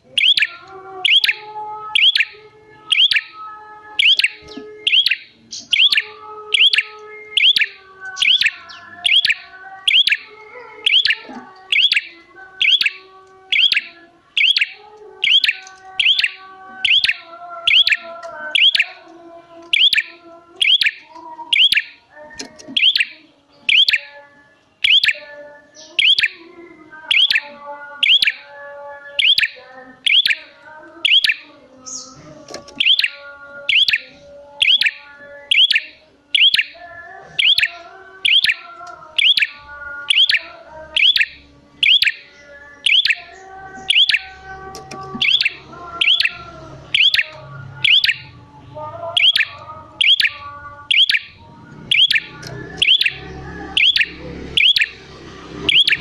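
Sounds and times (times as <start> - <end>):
soft bird twittering: 0.1 - 3.3, 4.0 - 19.0, 19.7 - 26.4, 29.0 - 48.4, 49.2 - 55.0, 55.6 - 56.0.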